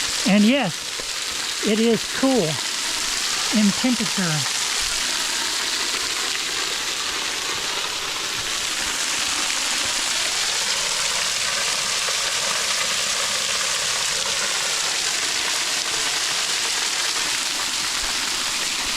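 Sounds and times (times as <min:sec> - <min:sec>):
small waterfall splashing: 0:00.0 - 0:18.9.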